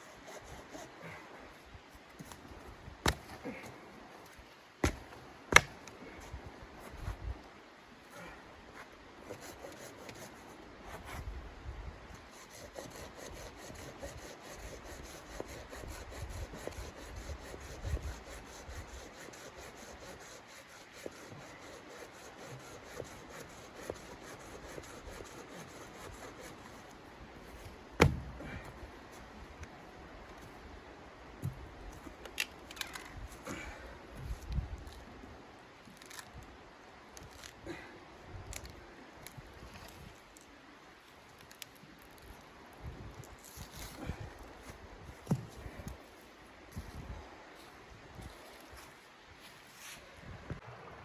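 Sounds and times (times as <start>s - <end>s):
rubbing and scraping on wood: 4.8s - 6.2s, 12.2s - 28.2s.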